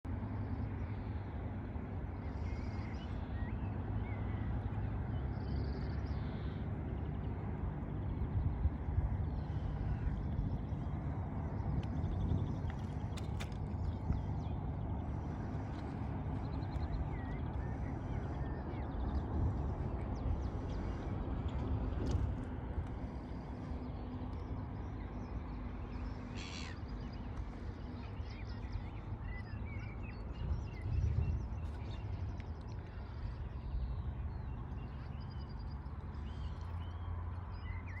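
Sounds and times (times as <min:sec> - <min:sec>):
steady low rumble: 0:00.0 - 0:38.0
bird calls and chirps: 0:09.2 - 0:22.3, 0:23.0 - 0:38.0.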